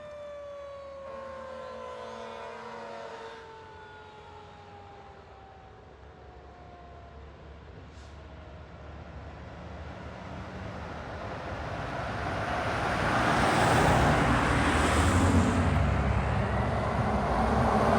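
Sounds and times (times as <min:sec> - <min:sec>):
fire truck engine rumble: 0:03.6 - 0:17.9.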